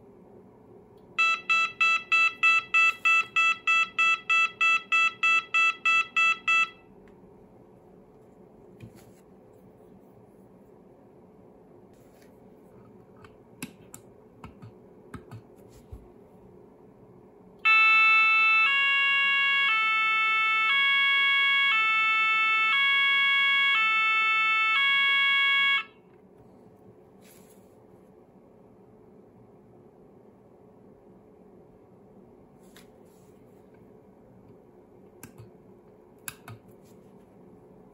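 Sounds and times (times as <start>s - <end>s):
two-tone fire alarm: 1.2s - 6.8s, 17.6s - 26.0s.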